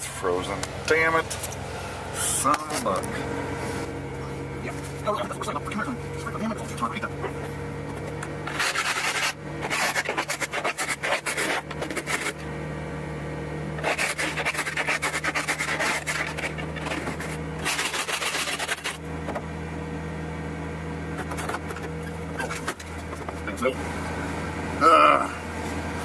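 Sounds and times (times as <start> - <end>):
low engine hum: 0.0 - 26.0
ice scraper rasping on windshield: 7.9 - 12.4, 13.8 - 19.0, 21.2 - 23.1.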